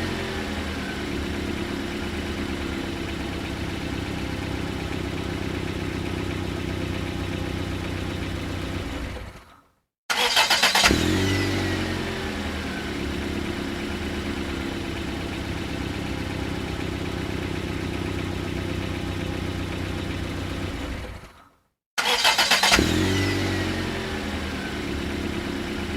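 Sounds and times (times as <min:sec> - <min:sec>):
engine revving with falling whine: 0:00.0 - 0:03.1, 0:10.6 - 0:15.0, 0:22.5 - 0:25.9
car engine idling: 0:00.0 - 0:09.3, 0:11.9 - 0:21.3, 0:23.8 - 0:25.9.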